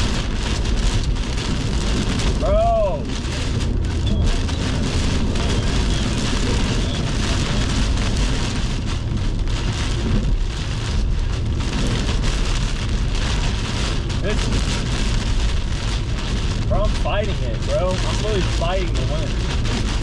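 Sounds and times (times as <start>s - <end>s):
heavy rain battering a car: 0.0s - 20.0s
wind gusts: 0.0s - 20.0s.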